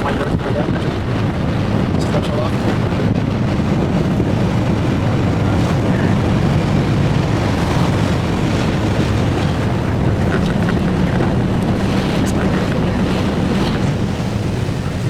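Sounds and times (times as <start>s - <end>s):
wind and road noise: 0.0s - 15.0s
car engine cruising: 3.9s - 15.0s.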